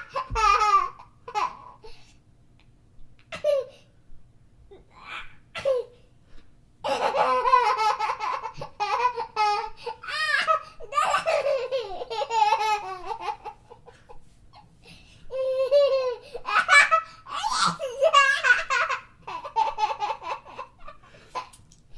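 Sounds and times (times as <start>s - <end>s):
young child laughing: 0.0s - 1.9s, 3.2s - 3.9s, 6.8s - 14.7s, 15.3s - 21.7s.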